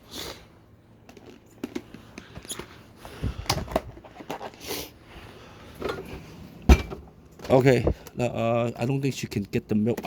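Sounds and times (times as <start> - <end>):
containers thumping: 5.8 - 8.0.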